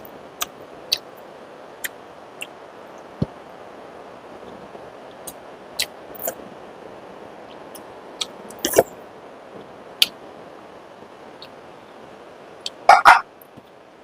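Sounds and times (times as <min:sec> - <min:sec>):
mouth clicks and smacks chewing: 0:00.4 - 0:01.0.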